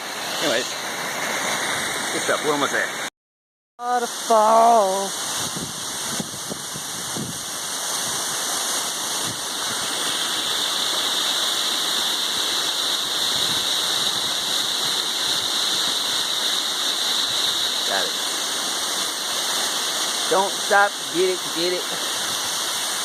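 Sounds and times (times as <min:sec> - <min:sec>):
waterfall rushing: 0:00.0 - 0:03.1, 0:03.9 - 0:23.0.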